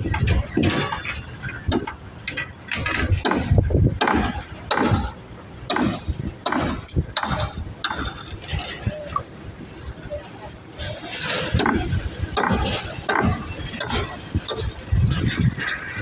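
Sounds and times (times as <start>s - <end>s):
mechanical clicking and knocking: 10.8s - 16.0s.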